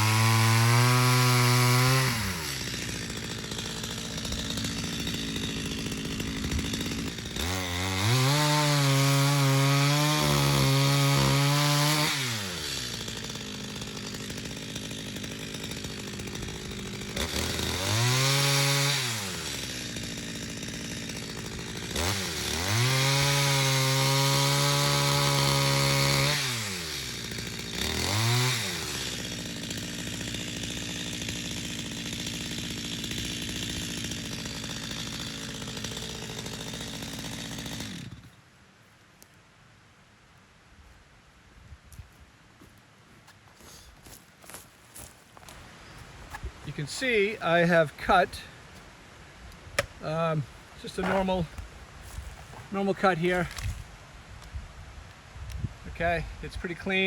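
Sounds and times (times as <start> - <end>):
chainsaw revving: 0.0 - 38.4, 46.3 - 48.6, 49.8 - 53.9.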